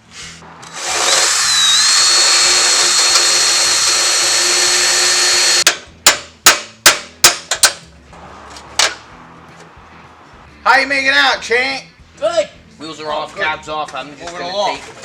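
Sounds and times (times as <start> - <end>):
electric drill whining: 0.6 - 5.6
hammer striking metal: 5.6 - 7.8, 8.5 - 9.8.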